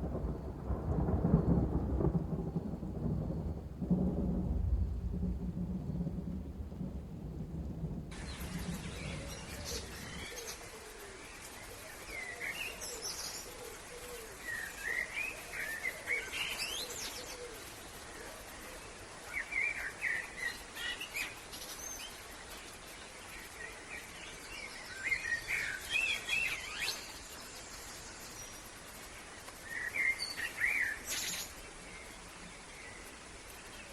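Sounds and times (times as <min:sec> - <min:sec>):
steady outdoor hiss: 0:00.0 - 0:33.9
low rumble: 0:01.3 - 0:10.3
wild birds chirping and singing: 0:08.1 - 0:33.9.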